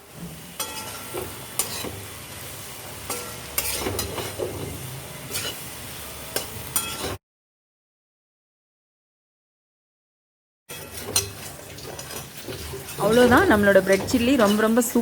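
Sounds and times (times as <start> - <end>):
sizzling in a frying pan: 0.0 - 7.2, 10.7 - 15.0
spatula scraping and clinking pan: 0.5 - 2.1, 2.7 - 5.7, 6.3 - 7.2, 10.7 - 15.0.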